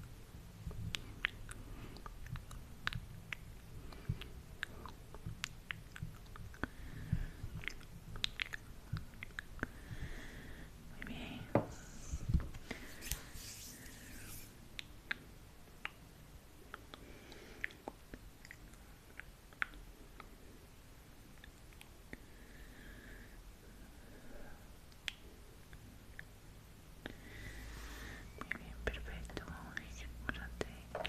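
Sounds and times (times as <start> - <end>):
wet mouth clicks and smacks: 0.7 - 6.8, 7.5 - 9.8, 14.7 - 16.1, 16.7 - 20.4, 24.9 - 26.3
soft hisses: 11.0 - 14.7.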